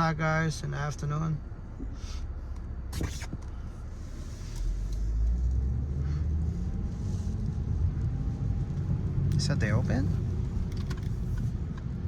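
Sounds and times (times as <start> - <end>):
car interior engine and road noise: 0.0 - 12.0.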